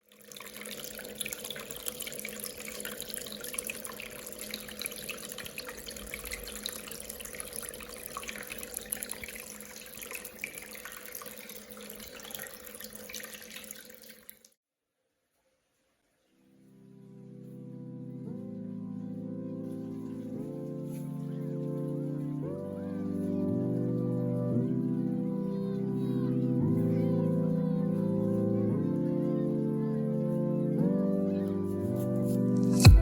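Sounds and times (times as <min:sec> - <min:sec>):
small waterfall trickling: 0:00.0 - 0:14.6.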